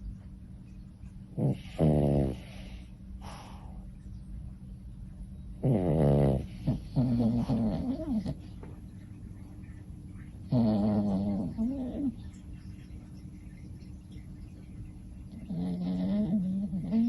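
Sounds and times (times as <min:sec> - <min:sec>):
dog snoring: 0:01.3 - 0:03.8, 0:05.6 - 0:08.5, 0:10.4 - 0:12.2, 0:15.3 - 0:17.0
dog breathing: 0:01.4 - 0:03.9, 0:05.6 - 0:08.8, 0:10.3 - 0:12.3, 0:15.2 - 0:17.0.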